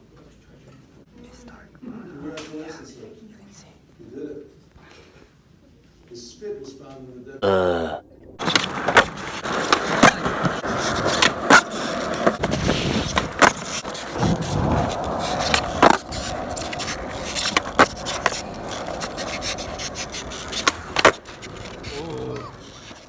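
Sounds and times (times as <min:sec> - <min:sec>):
skateboard clacks: 0:08.4 - 0:23.0
skateboard rolling over pavement: 0:08.4 - 0:23.0.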